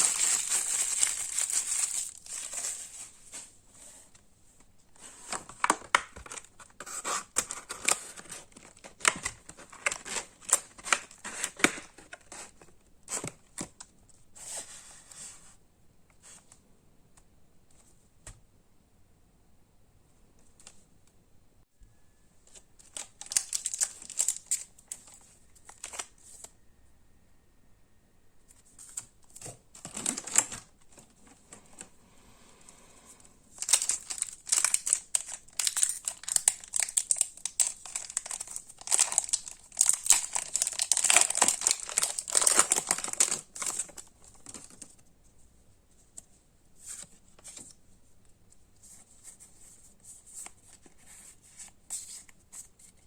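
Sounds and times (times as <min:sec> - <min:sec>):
plastic packaging tearing: 0:00.0 - 0:02.8, 0:22.9 - 0:24.7, 0:33.6 - 0:44.8
plastic packaging crinkling: 0:00.0 - 0:03.4, 0:22.8 - 0:26.2, 0:33.6 - 0:45.0.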